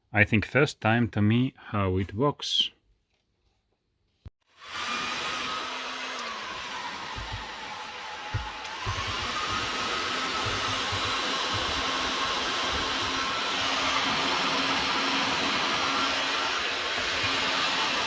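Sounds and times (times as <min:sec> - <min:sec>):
heat gun blowing air: 0:04.5 - 0:18.0.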